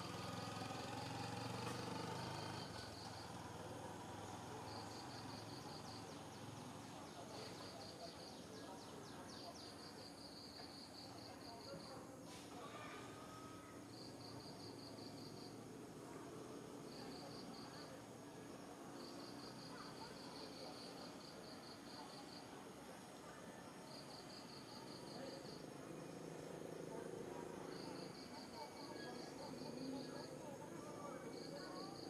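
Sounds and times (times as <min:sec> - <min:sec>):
low background murmur: 0:00.0 - 0:32.0
insects chirping in trills: 0:00.1 - 0:12.0, 0:13.3 - 0:15.7, 0:16.7 - 0:22.6, 0:23.7 - 0:26.8.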